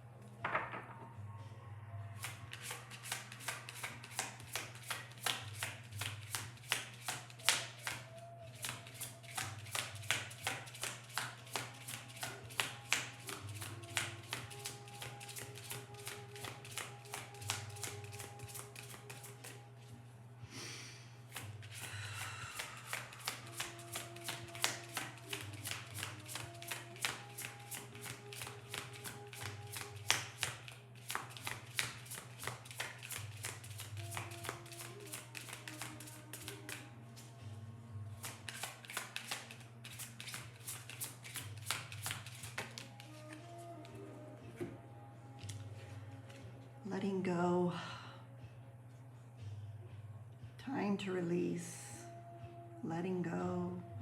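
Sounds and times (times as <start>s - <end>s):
cards being shuffled: 2.2s - 19.9s, 21.3s - 37.4s, 38.1s - 44.0s, 45.4s - 46.4s.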